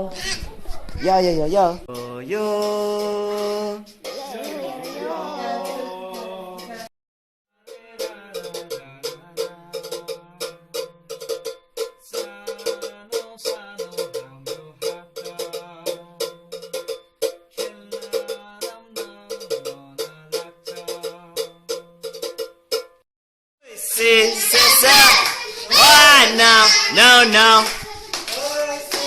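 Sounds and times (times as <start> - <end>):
plucked string instrument tune: 1.9 - 6.9, 7.7 - 23.0.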